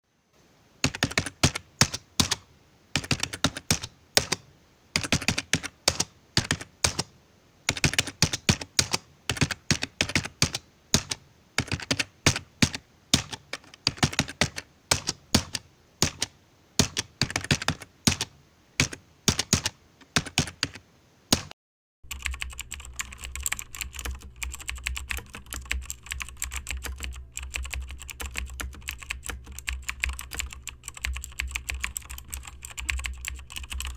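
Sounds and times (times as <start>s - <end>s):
keyboard key clicks: 3.0s - 4.4s, 7.7s - 21.5s
steady low hum: 22.1s - 33.9s.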